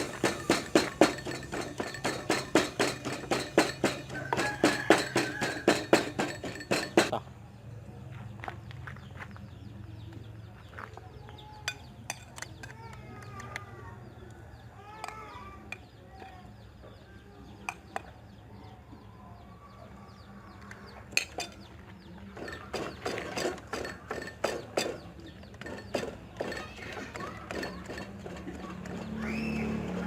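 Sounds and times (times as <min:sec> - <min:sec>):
kitchen utensils clinking: 0:00.0 - 0:07.1, 0:22.4 - 0:29.5.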